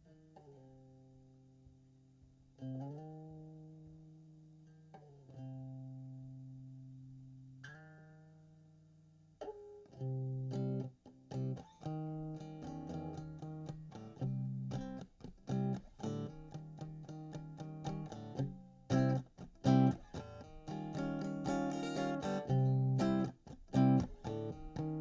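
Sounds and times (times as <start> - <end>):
electric guitar chords: 10.0 - 25.0.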